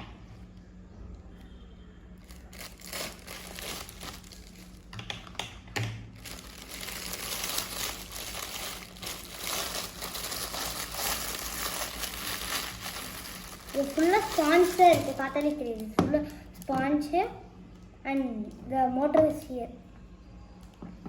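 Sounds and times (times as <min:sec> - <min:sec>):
packaging crinkling and rustling: 0:02.2 - 0:05.0, 0:06.2 - 0:16.0.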